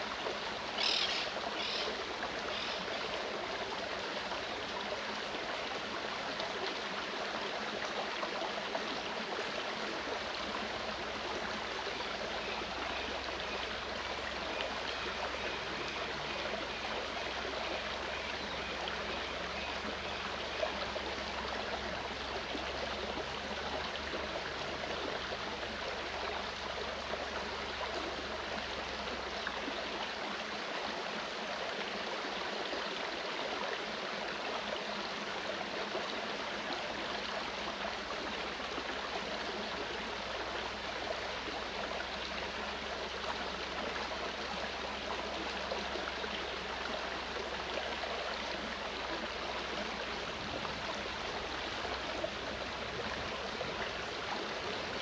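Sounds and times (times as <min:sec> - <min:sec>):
stream rushing over rocks: 0:00.0 - 0:55.0.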